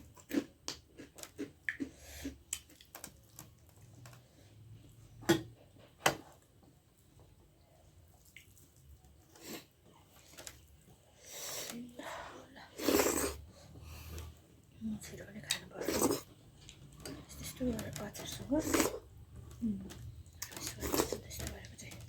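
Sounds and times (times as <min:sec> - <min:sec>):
person chewing with mouth smacks: 0:00.0 - 0:04.2.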